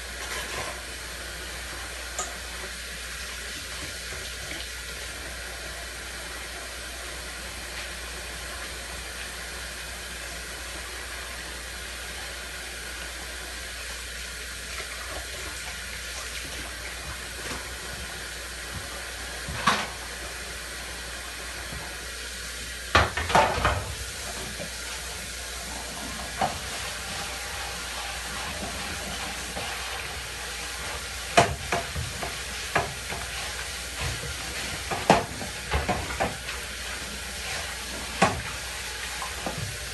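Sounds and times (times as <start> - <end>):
water hissing and scrubbing: 23.6 - 39.9.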